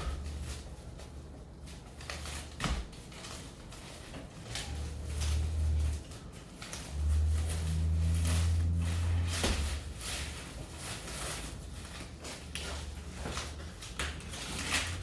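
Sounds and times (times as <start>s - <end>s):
food wrapping crinkling: 0.0s - 15.0s
low hum: 4.5s - 11.0s.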